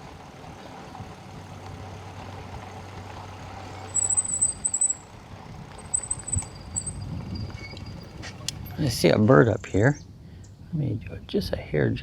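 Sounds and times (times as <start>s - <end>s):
electric bike humming: 0.0s - 8.9s
high-pitched squeal pulses: 3.6s - 5.1s, 5.8s - 8.5s.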